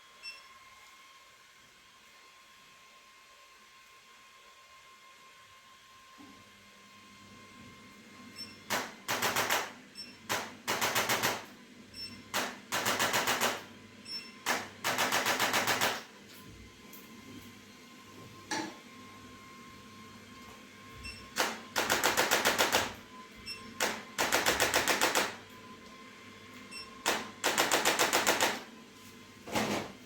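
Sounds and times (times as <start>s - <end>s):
rapid mechanical tapping: 27.1s - 28.6s.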